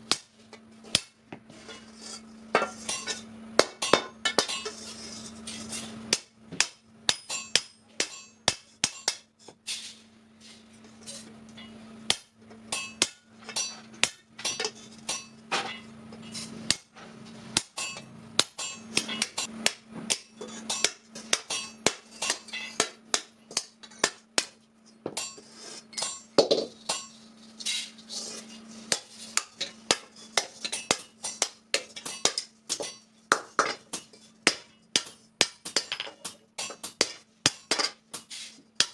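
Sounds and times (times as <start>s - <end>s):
steady low hum: 0.0s - 38.9s
hammer striking metal: 5.5s - 9.3s, 11.6s - 16.9s, 17.6s - 27.2s, 28.9s - 38.9s.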